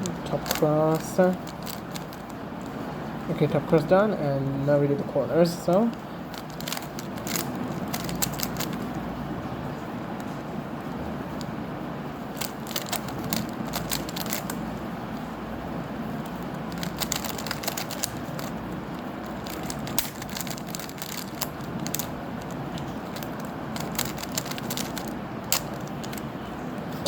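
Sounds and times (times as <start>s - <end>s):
puzzle cube clicking and rattling: 0.0s - 2.8s, 5.5s - 9.0s, 12.3s - 14.7s, 16.2s - 26.3s
low background noise: 0.0s - 27.0s.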